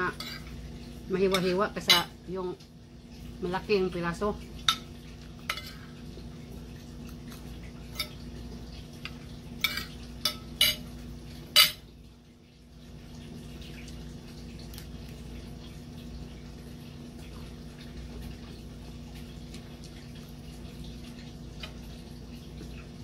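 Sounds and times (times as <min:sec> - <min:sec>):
steady low hum: 0:00.0 - 0:23.0
cutlery clinking against plate: 0:05.5 - 0:05.8, 0:07.3 - 0:08.2, 0:09.6 - 0:10.9, 0:11.6 - 0:11.8.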